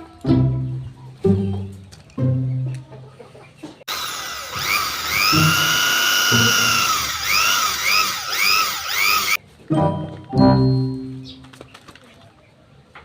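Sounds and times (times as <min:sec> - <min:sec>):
small electric drill whirring: 0:03.9 - 0:09.4.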